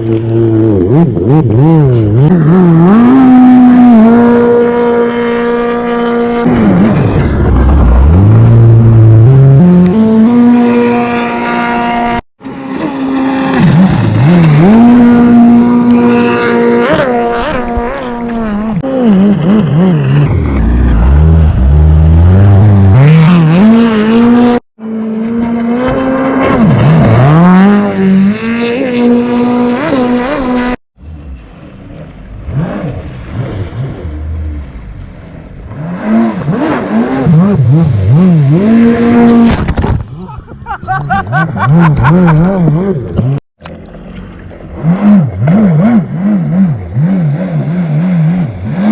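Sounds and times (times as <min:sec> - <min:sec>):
jet ski engine revving: 0:00.0 - 0:39.6, 0:41.6 - 0:48.9.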